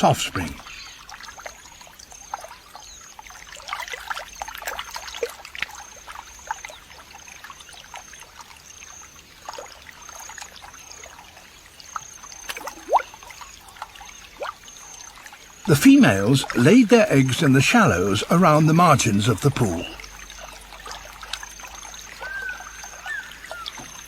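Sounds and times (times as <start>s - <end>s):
water drips and plops: 0.0s - 24.0s
water trickling: 0.0s - 24.0s
rising gurgles: 14.4s - 24.0s
faint high chirp: 21.2s - 24.0s.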